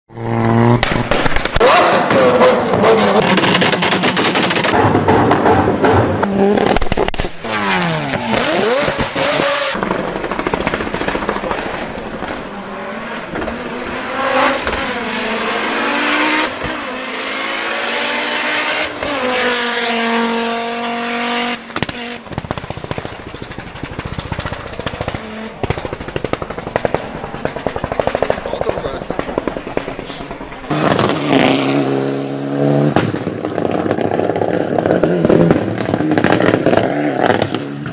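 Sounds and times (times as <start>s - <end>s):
car engines revving: 0.1s - 37.9s
exhaust pops and bangs: 0.6s - 15.5s, 16.3s - 17.0s, 18.2s - 32.2s, 32.8s - 37.9s
sharp exhaust cracks: 0.6s - 17.0s, 21.6s - 32.2s.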